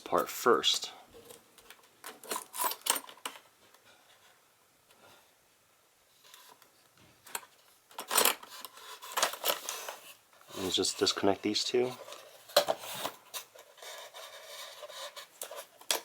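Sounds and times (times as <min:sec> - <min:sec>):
small clicks and scrapes of lock parts: 0:01.2 - 0:03.8, 0:06.2 - 0:10.8, 0:12.0 - 0:16.0.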